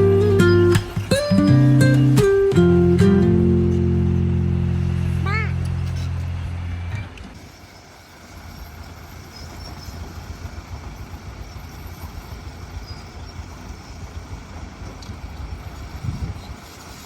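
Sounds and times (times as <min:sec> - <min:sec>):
heavy machine engine rumbling: 0:00.0 - 0:07.5.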